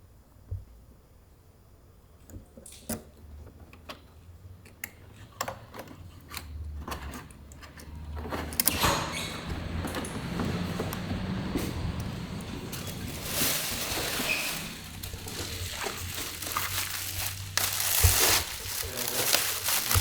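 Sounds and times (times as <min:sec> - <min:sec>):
scraping and rustling: 0:05.8 - 0:20.0.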